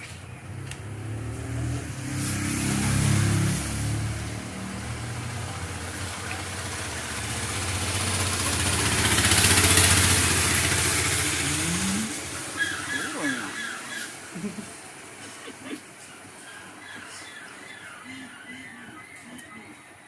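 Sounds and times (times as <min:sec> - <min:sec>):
vehicle engine passing by: 0:00.3 - 0:14.3.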